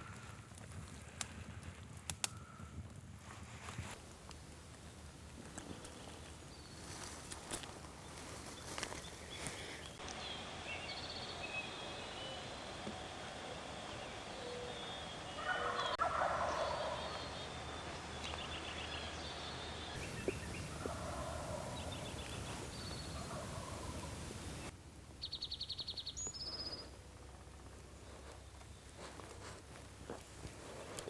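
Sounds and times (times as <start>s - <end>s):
songbirds trilling and chirping: 4.1s - 29.4s
turkey gobbling: 10.0s - 24.7s.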